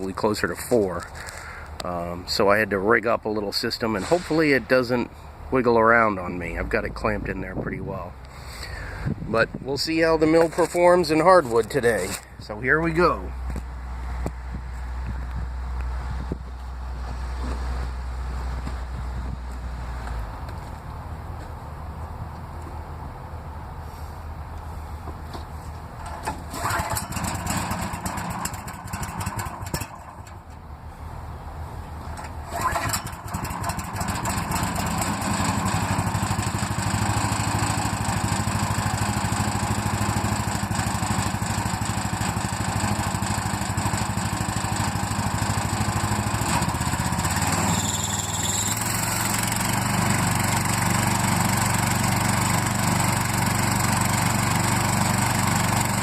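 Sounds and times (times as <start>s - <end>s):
gas engine running: 26.0s - 30.7s, 32.0s - 56.0s.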